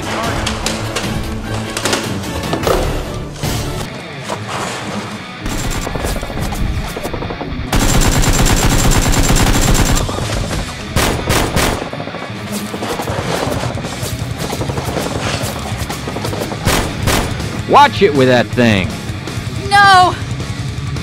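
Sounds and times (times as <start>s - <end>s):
background music: 0.0s - 21.0s
automatic gunfire: 7.7s - 10.3s, 11.0s - 12.0s, 16.6s - 17.4s.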